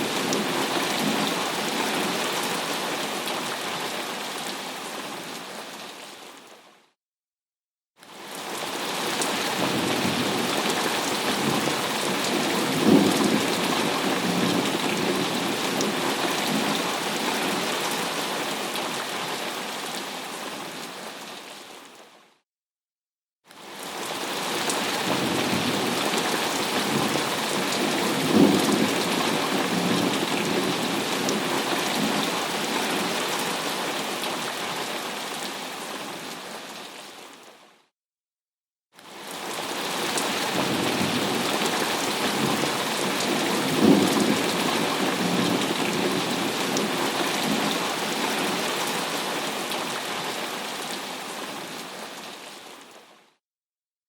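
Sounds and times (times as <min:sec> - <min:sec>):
heavy rain: 0:00.0 - 0:06.6, 0:08.1 - 0:22.0, 0:23.6 - 0:37.5, 0:39.1 - 0:53.0.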